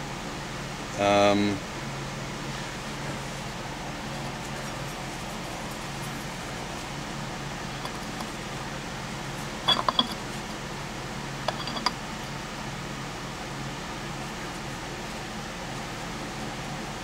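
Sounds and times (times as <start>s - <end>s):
steady low hum: 0.0s - 17.0s
small metal parts clinking: 9.6s - 10.2s, 11.5s - 12.0s.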